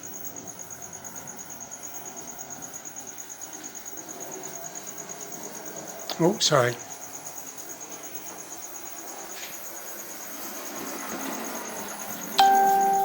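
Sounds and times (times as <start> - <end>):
faint high pulsing chirp: 12.4 - 13.0
loud steady pitched tone: 12.4 - 13.0.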